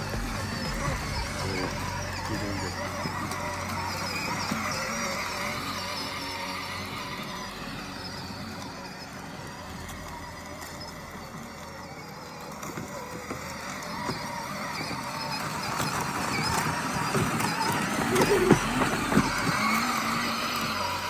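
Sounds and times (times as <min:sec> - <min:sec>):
ride-on toy electric motor whine: 0:00.0 - 0:21.0
tyre noise: 0:00.0 - 0:21.0.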